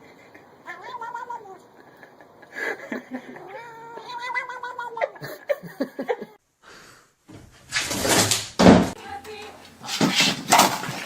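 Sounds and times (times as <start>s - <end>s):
cat meowing: 0.6s - 1.7s, 3.3s - 5.2s.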